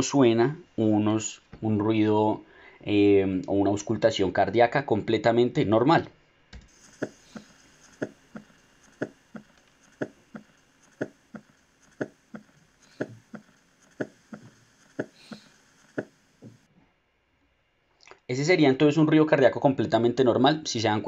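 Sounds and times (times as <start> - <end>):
heartbeat through stethoscope: 6.7 - 16.7.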